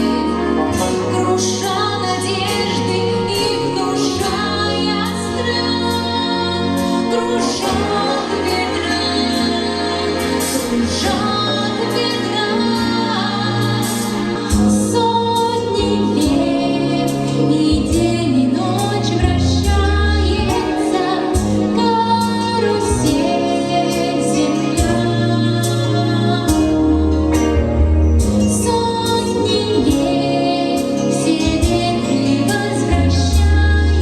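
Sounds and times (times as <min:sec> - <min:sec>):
woman singing: 0:00.0 - 0:27.6, 0:28.4 - 0:34.0
instrumental backing track with beat: 0:00.0 - 0:34.0.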